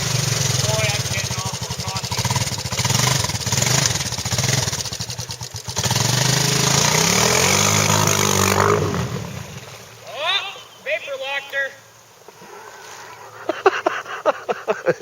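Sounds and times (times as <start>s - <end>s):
quad engine running hard: 0.0s - 9.6s
driving through water: 0.0s - 11.6s.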